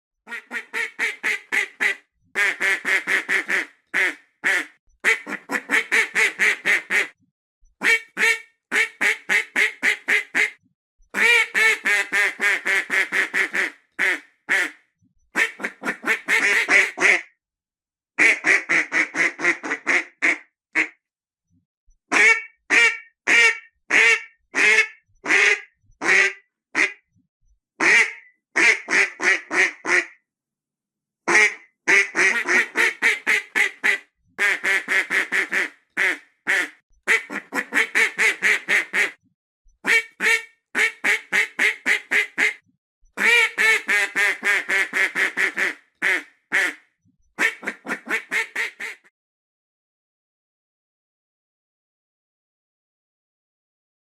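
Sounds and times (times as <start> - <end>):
ducks quacking: 0.3 - 7.2, 11.2 - 14.7, 15.4 - 17.2, 31.3 - 39.2, 39.9 - 42.6, 43.2 - 46.8, 47.4 - 49.1.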